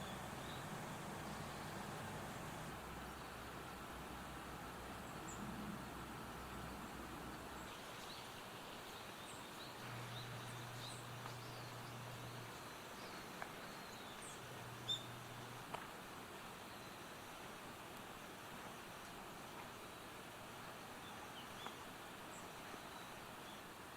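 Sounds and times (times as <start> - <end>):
faint low hum: 0.0 - 17.4.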